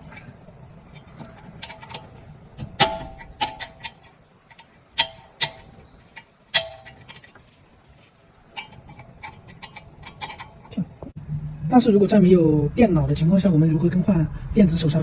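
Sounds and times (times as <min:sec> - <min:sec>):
metal tools clinking: 0:00.0 - 0:11.1
faint steady high whine: 0:00.0 - 0:15.0.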